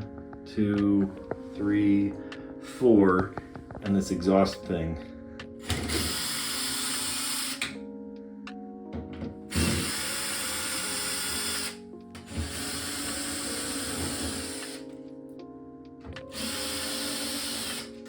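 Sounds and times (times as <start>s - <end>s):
background music tones: 0.0s - 18.0s
power drill-driver running: 5.6s - 7.8s, 9.5s - 14.9s, 16.3s - 18.0s.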